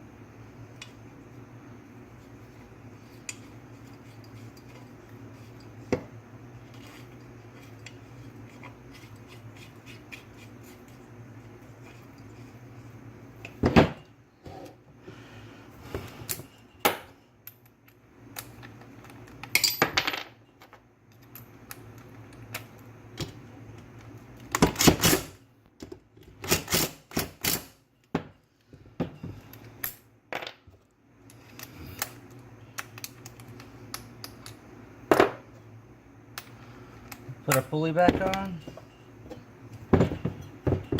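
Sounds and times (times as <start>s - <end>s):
faint steady hum: 0.0s - 40.9s
metal parts clinking and rattling: 18.4s - 21.6s.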